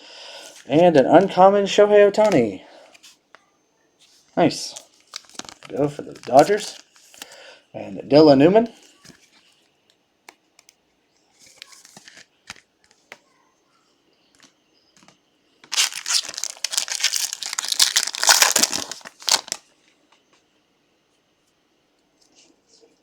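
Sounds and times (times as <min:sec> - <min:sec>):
foil wrapper tearing and crinkling: 0:05.0 - 0:07.2, 0:15.7 - 0:19.6.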